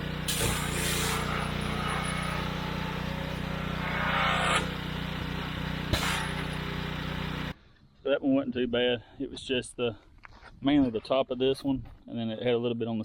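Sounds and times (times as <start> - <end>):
pressure washer engine hum: 0.0 - 7.6
hiss of spray: 0.3 - 2.1, 3.8 - 4.7, 5.9 - 6.5.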